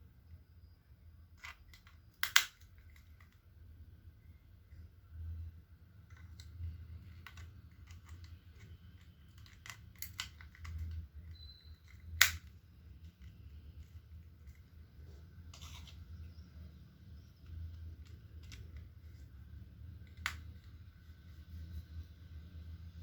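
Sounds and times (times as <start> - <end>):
clicks and taps of handling: 17.4 - 19.2.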